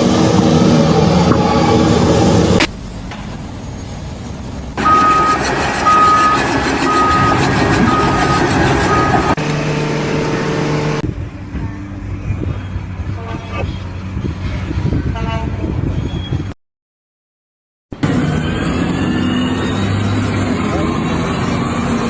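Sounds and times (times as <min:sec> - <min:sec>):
vehicle engine noise: 0:00.0 - 0:16.5, 0:18.0 - 0:22.0
low machine hum: 0:02.6 - 0:11.0
backup alarm beeping: 0:04.8 - 0:11.0.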